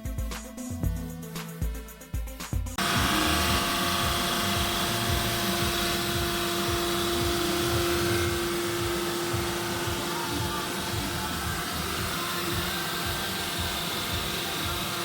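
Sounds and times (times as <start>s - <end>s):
drum sander running: 2.8s - 15.0s.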